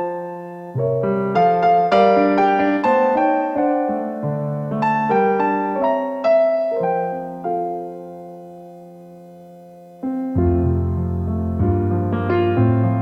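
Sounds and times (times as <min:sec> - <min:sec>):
instrumental carol on keyboard: 0:00.0 - 0:13.0.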